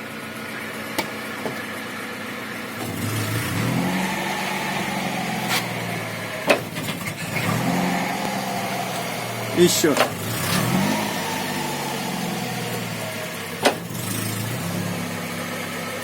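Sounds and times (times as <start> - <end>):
car engine running: 0.0 - 16.0
sharp knocks from rear axle: 6.4 - 7.6, 9.9 - 10.8, 13.6 - 14.1.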